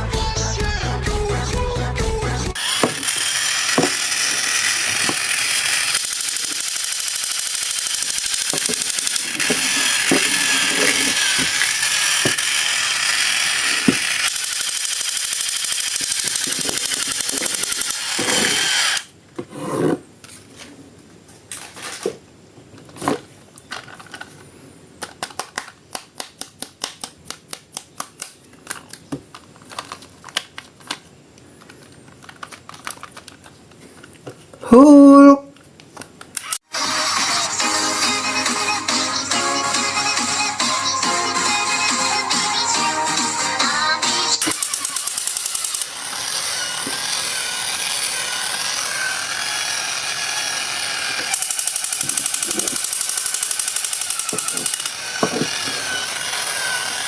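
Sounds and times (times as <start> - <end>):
sharp plastic clicks: 25.0 - 31.0, 51.1 - 55.7
plastic packaging crinkling: 28.8 - 34.1.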